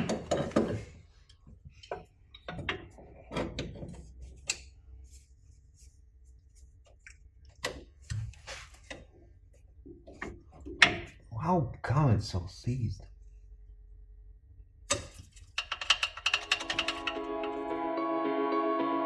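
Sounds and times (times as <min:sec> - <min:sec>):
hand tools knocking and clicking: 0:00.0 - 0:00.8, 0:14.9 - 0:17.2.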